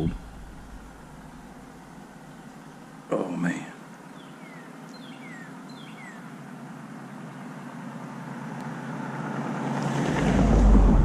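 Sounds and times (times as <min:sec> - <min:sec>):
outdoor rushing noise: 0:08.3 - 0:11.0.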